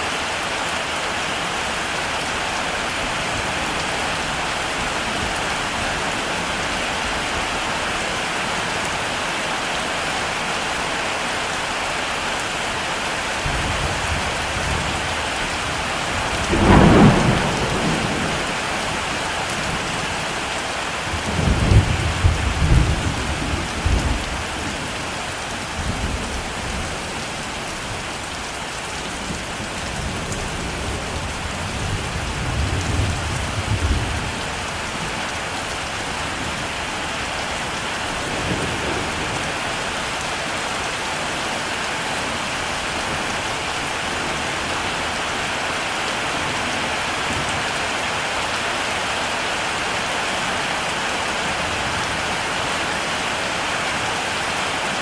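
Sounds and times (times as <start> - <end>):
heavy rain: 0.0 - 55.0
low rolling thunder: 13.4 - 20.0, 21.1 - 25.0, 29.2 - 35.2
sharp thunderclap: 16.3 - 19.0.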